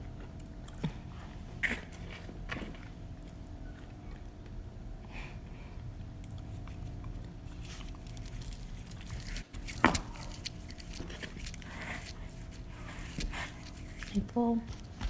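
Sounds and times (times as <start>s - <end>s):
low room hum: 0.0s - 15.0s
person chewing food: 6.1s - 14.2s.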